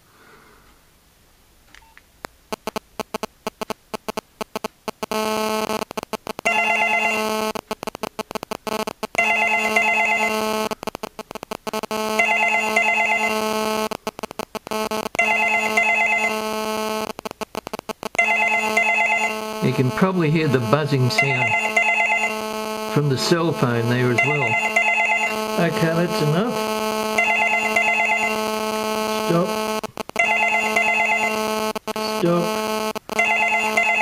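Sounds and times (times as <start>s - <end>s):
cell phone interference buzz: 2.5s - 34.0s
telephone double ring: 21.4s - 22.3s, 24.2s - 25.3s.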